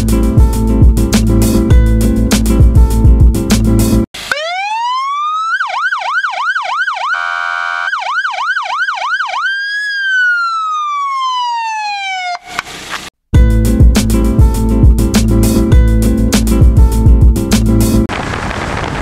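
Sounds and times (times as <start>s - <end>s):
electronic siren wailing: 4.2s - 12.6s
siren yelp: 4.2s - 12.6s.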